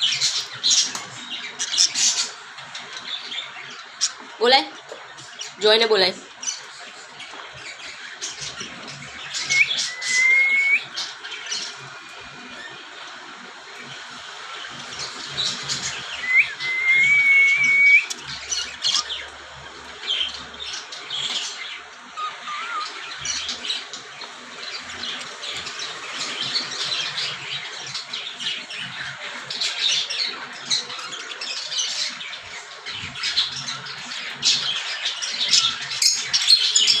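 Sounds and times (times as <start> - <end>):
cockatiels squawking and chirping: 0.1 - 4.2, 6.4 - 11.7, 14.6 - 19.4, 20.0 - 37.0
bird whistle: 9.4 - 10.9, 16.2 - 18.2.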